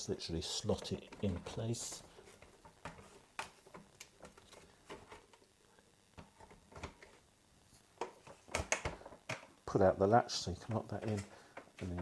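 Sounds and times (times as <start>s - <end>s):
faint clicks and taps: 0.7s - 7.2s, 8.0s - 9.6s, 10.6s - 12.0s.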